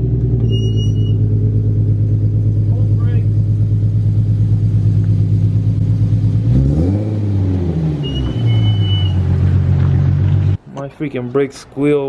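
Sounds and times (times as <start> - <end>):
car engine running: 0.0 - 10.6
brake squeal: 0.3 - 1.4, 7.8 - 10.6.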